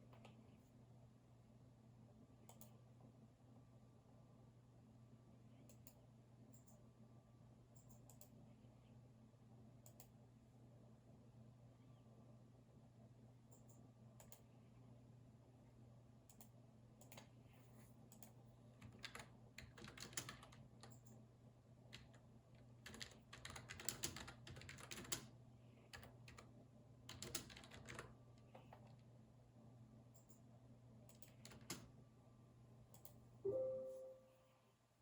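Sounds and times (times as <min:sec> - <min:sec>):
faint low hum: 0:00.0 - 0:35.0
keyboard typing: 0:18.1 - 0:21.2, 0:21.9 - 0:25.3, 0:25.9 - 0:26.5, 0:27.1 - 0:29.1, 0:31.1 - 0:31.9.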